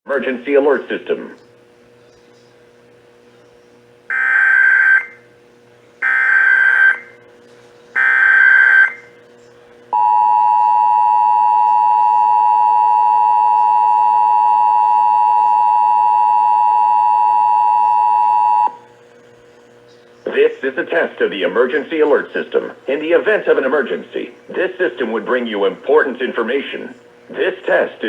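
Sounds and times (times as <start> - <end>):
data tone bursts: 4.1 - 5.2, 8.0 - 9.1.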